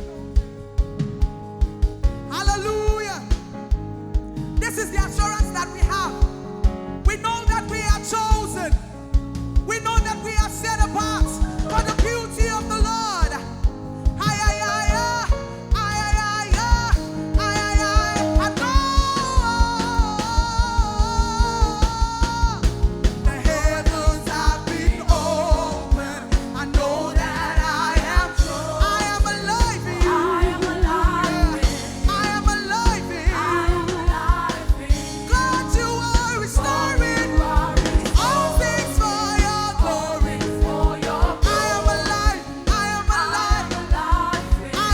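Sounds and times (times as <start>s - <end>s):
steady drum beat: 0.0s - 44.9s
worship band playing: 0.0s - 44.9s
person singing: 14.2s - 44.9s.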